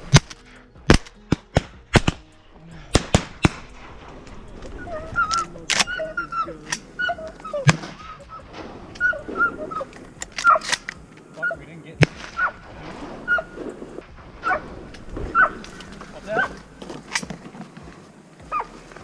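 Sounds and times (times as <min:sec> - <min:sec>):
ducks quacking: 0:02.0 - 0:19.0
shotgun cracks: 0:07.7 - 0:11.3.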